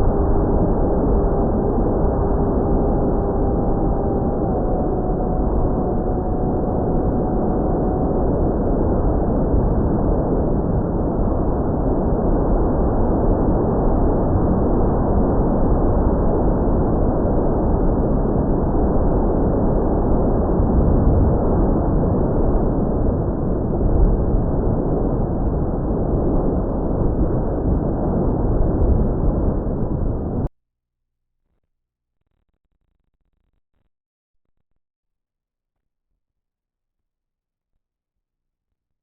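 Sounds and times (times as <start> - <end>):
faint steady tone: 0.0 - 10.9
wind rushing on microphone: 0.0 - 30.5.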